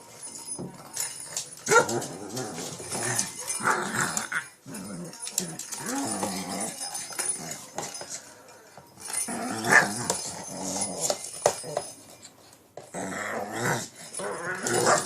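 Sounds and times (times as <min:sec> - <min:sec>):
dog growling: 0:02.0 - 0:07.4, 0:09.3 - 0:11.2, 0:12.9 - 0:15.0.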